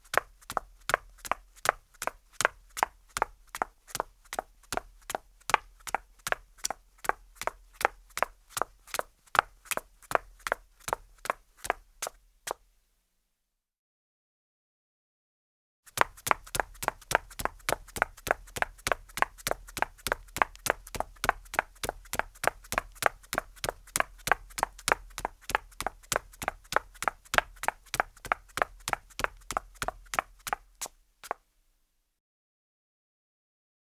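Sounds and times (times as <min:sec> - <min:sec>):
high heels clicking on concrete: 0:15.9 - 0:31.4.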